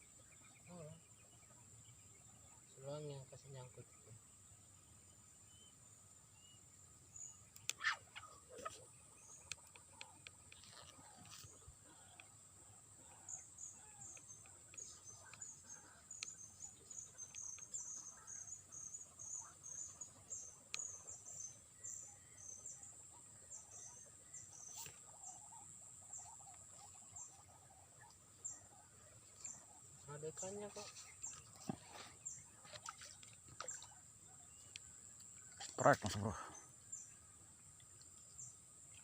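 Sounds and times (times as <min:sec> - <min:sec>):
insects chirping: 0:00.0 - 0:39.0
faint clicks: 0:09.4 - 0:12.3.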